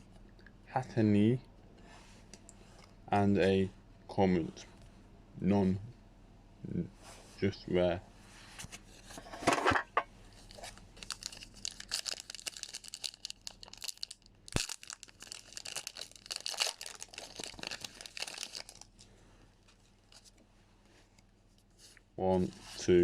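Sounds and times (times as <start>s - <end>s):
foil wrapper tearing and crinkling: 10.4s - 19.0s.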